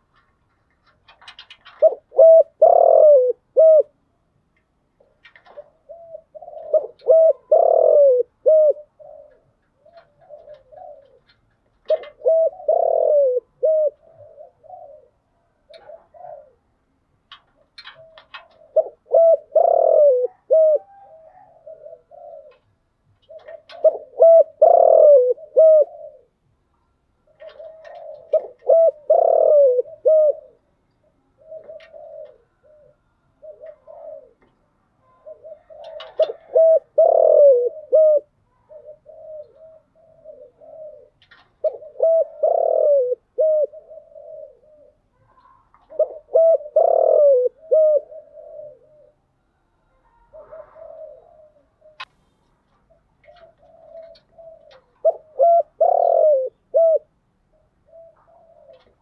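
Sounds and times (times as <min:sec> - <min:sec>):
dove cooing: 0:00.0 - 0:04.2, 0:05.0 - 0:59.0.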